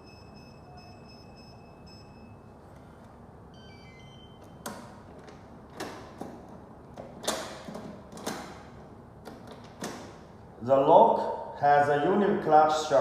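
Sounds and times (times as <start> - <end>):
keypad electronic beeps: 0.0 - 2.4, 3.6 - 4.8
lock latch clunking: 4.4 - 10.2.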